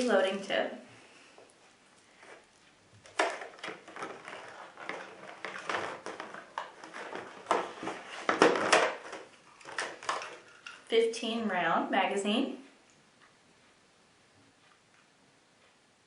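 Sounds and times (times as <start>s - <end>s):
plastic packaging rustling: 2.0s - 10.9s.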